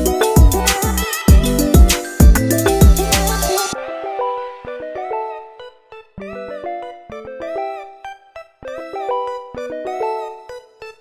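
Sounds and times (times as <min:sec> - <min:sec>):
heavy music beat: 0:00.0 - 0:04.1
plucked string melody: 0:00.0 - 0:05.5.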